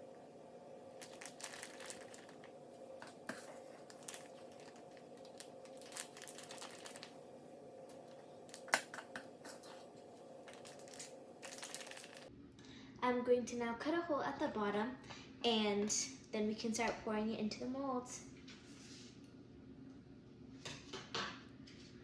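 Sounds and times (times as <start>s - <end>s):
plastic bag crinkling: 1.0s - 12.3s.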